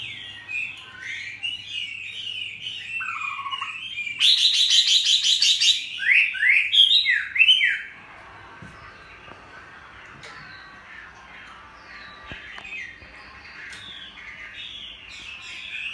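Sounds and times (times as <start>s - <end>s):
bird singing whistled song: 0.0s - 7.9s.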